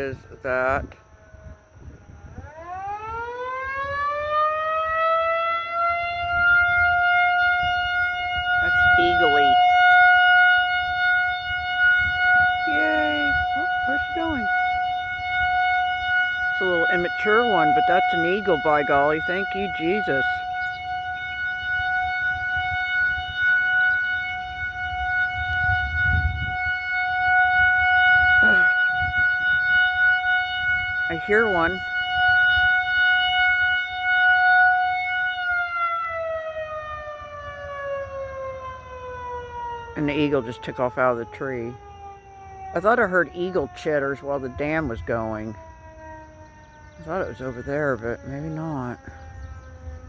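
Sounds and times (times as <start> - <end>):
warning siren wailing: 0.0 - 50.0.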